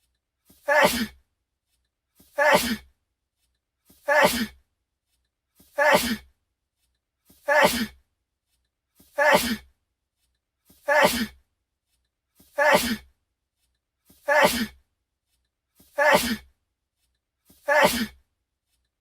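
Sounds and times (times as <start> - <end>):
breath in: 0.5 - 1.2, 2.2 - 2.9, 3.9 - 4.6, 5.6 - 6.3, 7.3 - 8.0, 9.0 - 9.7, 10.7 - 11.4, 12.4 - 13.1, 14.1 - 14.8, 15.8 - 16.5, 17.5 - 18.2
man sneezing: 0.6 - 1.2, 2.4 - 2.8, 4.0 - 4.6, 5.8 - 6.2, 7.5 - 8.0, 9.2 - 9.6, 10.9 - 11.4, 12.6 - 13.0, 14.3 - 14.8, 16.0 - 16.4, 17.7 - 18.2.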